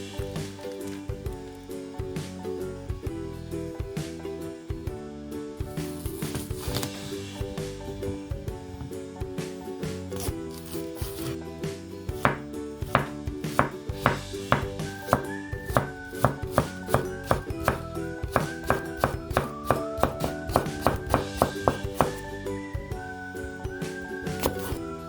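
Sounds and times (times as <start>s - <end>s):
background music: 0.0s - 25.0s
knife chopping on cutting board: 6.2s - 7.0s, 10.1s - 11.4s, 12.1s - 22.3s, 24.3s - 24.8s.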